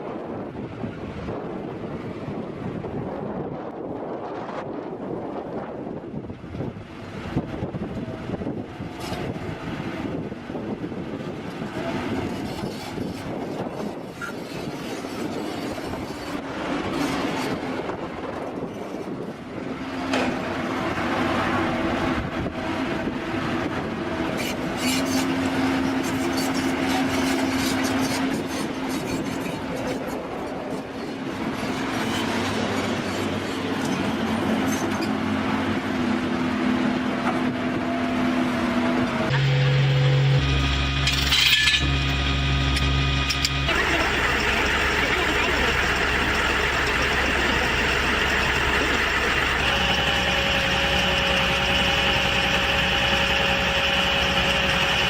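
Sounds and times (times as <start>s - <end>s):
train rolling noise: 0.0s - 55.0s
steady low pitched tone: 39.3s - 55.0s.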